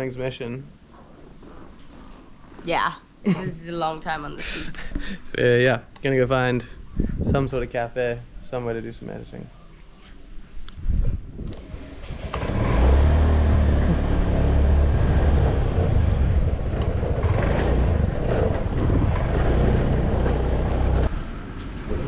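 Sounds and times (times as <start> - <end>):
road and wind noise: 6.0 - 22.0
motor scooter engine running: 11.7 - 21.1.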